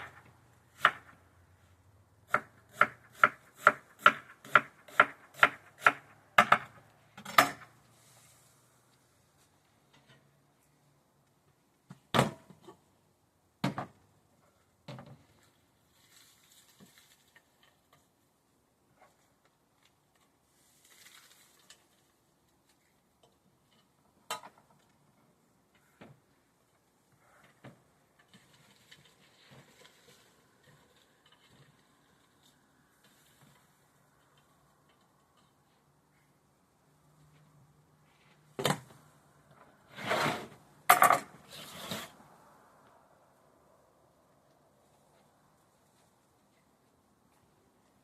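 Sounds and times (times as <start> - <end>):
soft hiss: 7.7 - 11.0.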